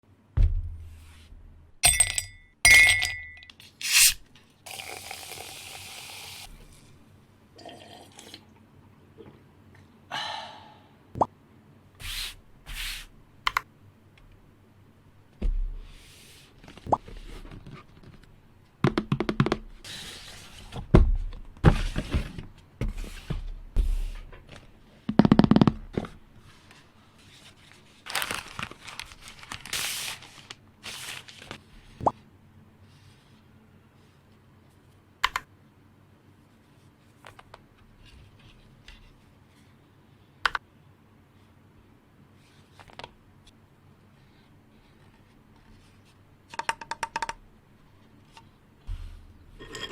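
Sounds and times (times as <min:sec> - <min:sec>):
keyboard parts knocking and clicking: 0:18.8 - 0:19.6, 0:46.5 - 0:47.4.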